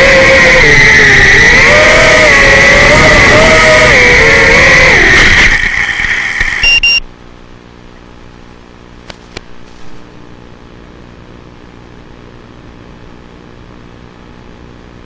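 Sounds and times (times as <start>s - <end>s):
quadcopter motors whining: 0.0s - 7.0s
faint steady hum: 0.0s - 15.0s.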